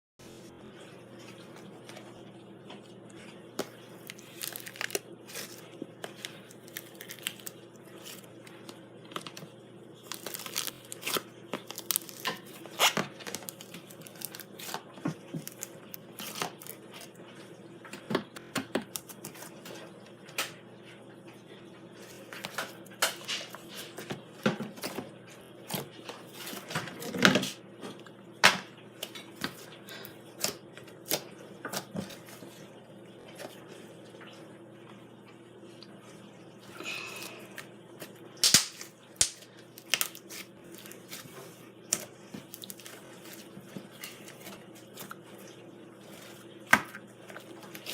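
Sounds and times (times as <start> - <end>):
slime popping and crackling: 4.0 - 8.3, 10.0 - 16.8, 38.4 - 41.2.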